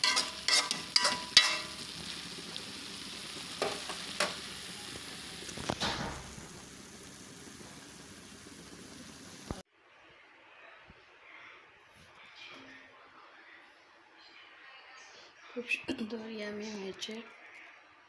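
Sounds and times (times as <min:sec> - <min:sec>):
spoon knocking against pan: 0:00.0 - 0:01.8
food sizzling in a pan: 0:00.0 - 0:09.7.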